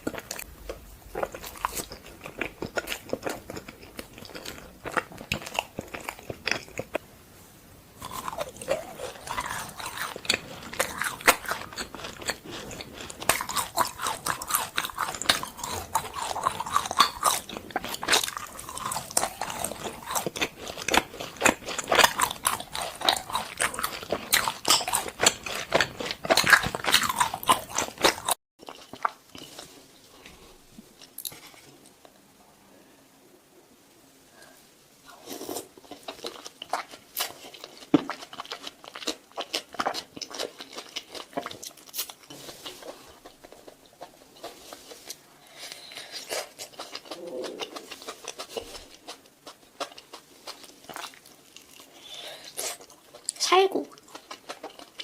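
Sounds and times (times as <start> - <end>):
chewing crunchy frozen fruit: 0.0 - 7.1, 8.0 - 31.9, 35.1 - 55.0.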